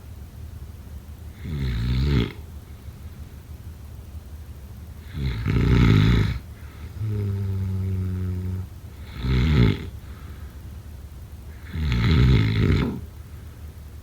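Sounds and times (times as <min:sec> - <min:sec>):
low hum of breath: 0:01.0 - 0:14.0
person snoring: 0:01.4 - 0:02.4, 0:05.0 - 0:10.0, 0:11.6 - 0:13.1.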